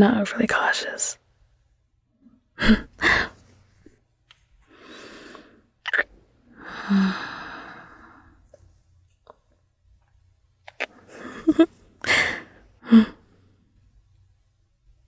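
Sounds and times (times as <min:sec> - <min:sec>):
woman breathing and sighing: 0:02.6 - 0:03.5, 0:06.5 - 0:08.4, 0:11.0 - 0:13.6.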